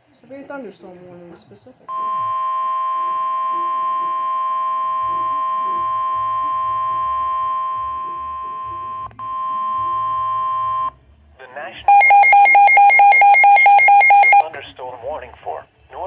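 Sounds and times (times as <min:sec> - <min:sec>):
steady piercing alarm tone: 0:11.9 - 0:14.4.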